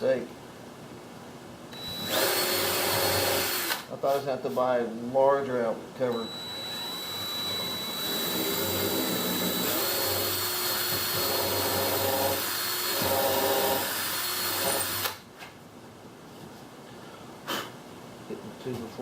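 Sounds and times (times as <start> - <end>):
power drill drilling plywood: 1.8 - 3.9, 6.2 - 15.2.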